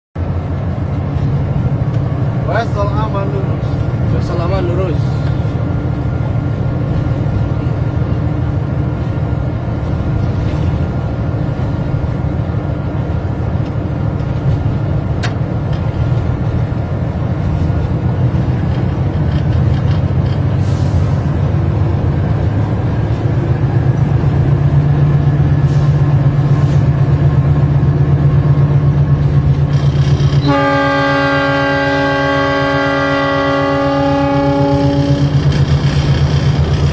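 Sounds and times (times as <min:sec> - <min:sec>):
train rumbling along track: 0:00.2 - 0:36.9
train horn chord: 0:30.4 - 0:35.4.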